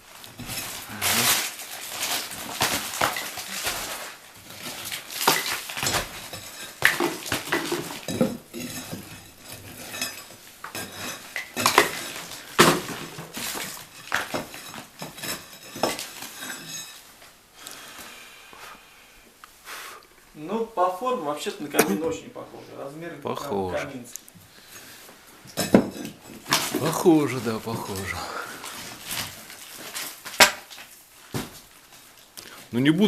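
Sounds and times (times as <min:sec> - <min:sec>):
bricks knocked and clattering: 0:00.3 - 0:17.0.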